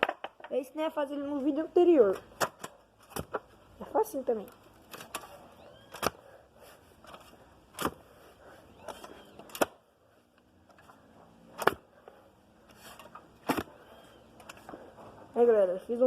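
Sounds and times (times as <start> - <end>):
post-hole digger thudding into soil: 12.8 - 13.8.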